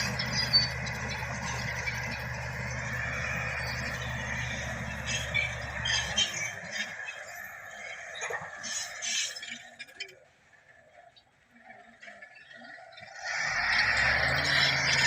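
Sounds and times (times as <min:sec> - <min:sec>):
squeals and clinks: 0:00.0 - 0:10.3
bulldozer diesel engine running: 0:00.0 - 0:15.0.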